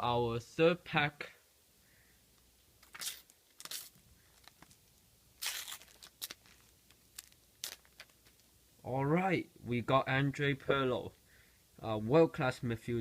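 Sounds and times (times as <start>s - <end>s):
paper wrapper ripping: 2.8s - 8.4s.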